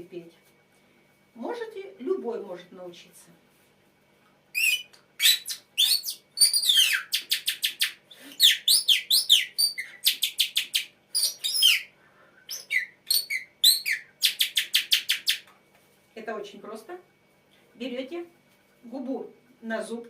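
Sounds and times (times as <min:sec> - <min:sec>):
person whistling bird song imitation: 0:04.6 - 0:15.4.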